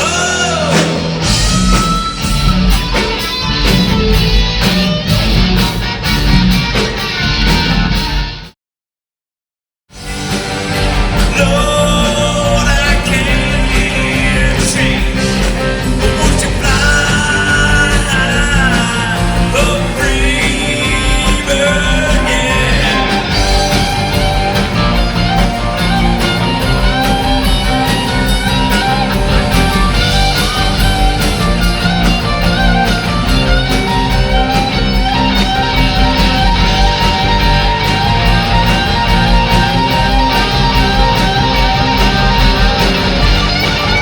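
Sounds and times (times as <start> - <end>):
person singing: 0.0 - 1.6, 11.2 - 24.2
bass guitar: 0.0 - 8.5, 9.9 - 44.0
electric guitars: 0.0 - 8.5, 10.0 - 44.0
drums: 0.0 - 8.6, 9.9 - 44.0.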